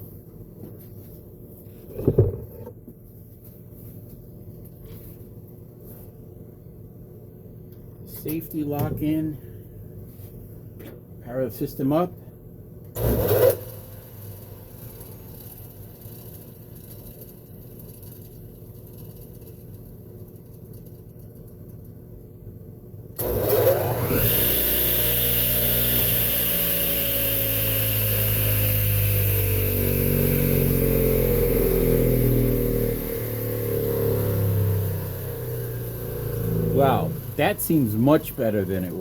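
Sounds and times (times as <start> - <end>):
saw motor whining: 23.2 - 39.0.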